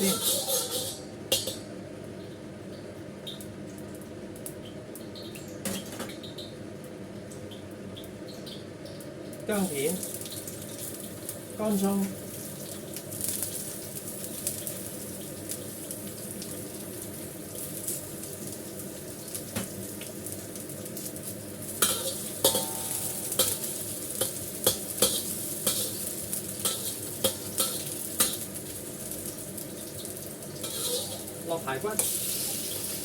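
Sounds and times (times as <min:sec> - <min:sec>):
spatula scraping wok: 0:00.0 - 0:01.6, 0:21.8 - 0:28.9, 0:30.6 - 0:33.0
food sizzling in hot oil: 0:00.0 - 0:02.0, 0:07.3 - 0:33.0.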